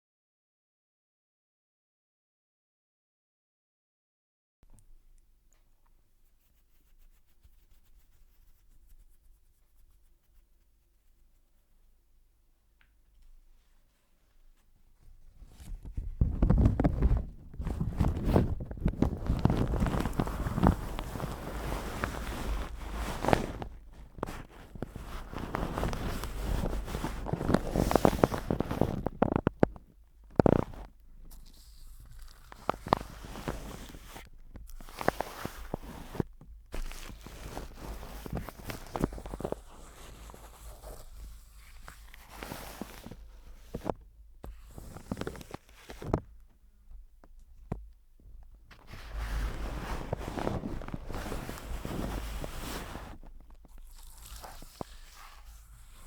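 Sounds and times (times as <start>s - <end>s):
rustling handling noise: 12.8s - 56.0s.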